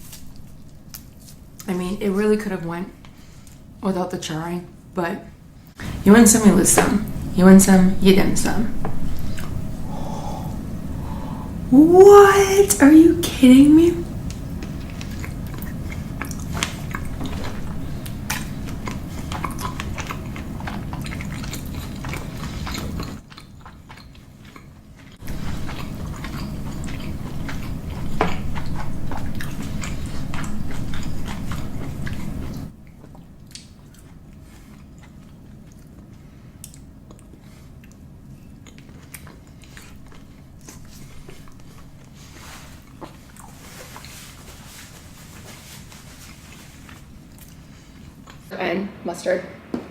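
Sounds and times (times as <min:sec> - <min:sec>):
chewing and crunching food: 0:00.0 - 0:02.2, 0:14.0 - 0:48.5
low background hum: 0:00.0 - 0:49.9.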